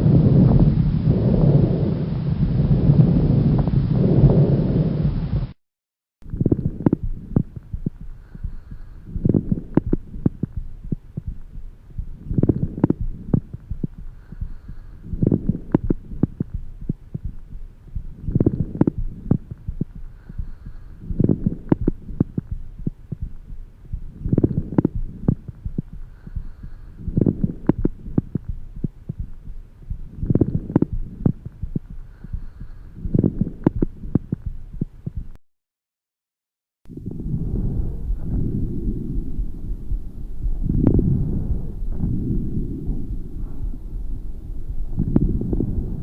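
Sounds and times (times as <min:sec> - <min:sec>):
breath noise through stethoscope: 0:06.3 - 0:35.3, 0:36.9 - 0:46.0.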